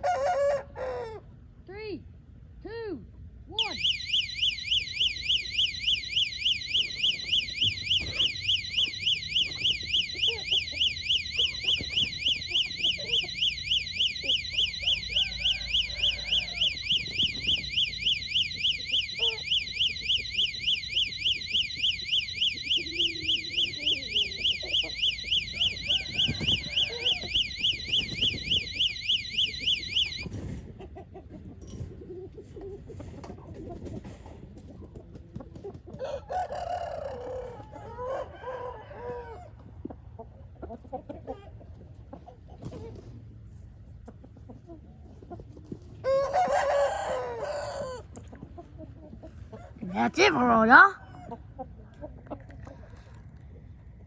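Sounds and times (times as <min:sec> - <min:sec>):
rooster crowing: 0:00.0 - 0:01.2, 0:09.8 - 0:18.3, 0:23.0 - 0:27.6, 0:36.0 - 0:39.5, 0:46.0 - 0:48.0
electronic alarm warbling: 0:03.6 - 0:30.2
chicken clucks and clicks: 0:30.5 - 0:36.8, 0:39.0 - 0:43.2, 0:43.8 - 0:49.7, 0:51.1 - 0:53.8.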